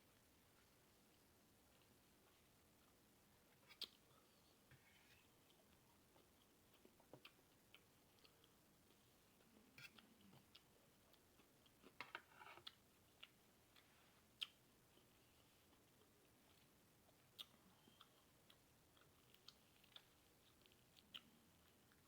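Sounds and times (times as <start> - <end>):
person chewing: 5.2 - 22.0.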